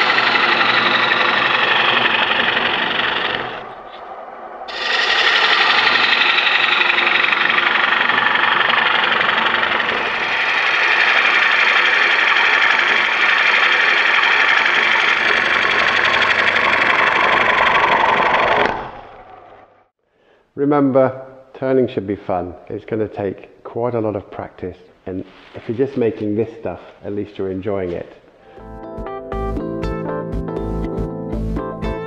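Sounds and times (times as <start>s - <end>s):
lathe gouge rasping on wood: 0.0s - 3.7s, 4.7s - 19.3s.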